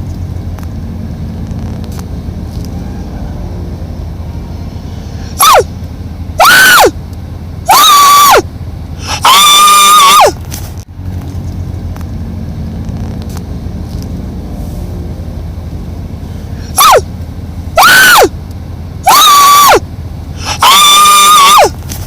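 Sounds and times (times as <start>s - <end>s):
animal high-pitched cries: 5.4s - 5.7s, 6.4s - 6.9s, 7.7s - 8.4s, 9.0s - 10.4s, 16.8s - 17.0s, 17.8s - 18.3s, 19.1s - 19.8s, 20.4s - 21.8s.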